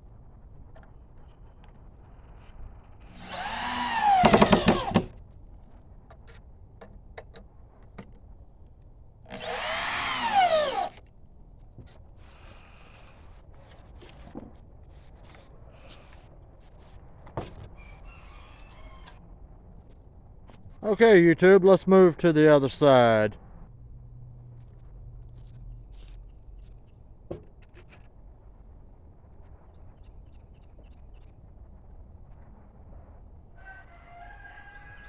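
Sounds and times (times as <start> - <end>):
power drill driving screws: 3.1 - 5.1, 9.3 - 11.0.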